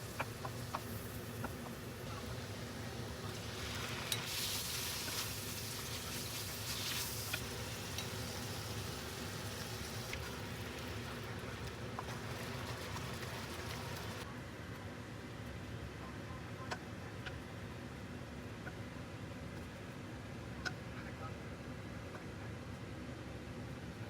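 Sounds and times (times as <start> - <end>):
beef sizzling in a pan: 0.0 - 14.2.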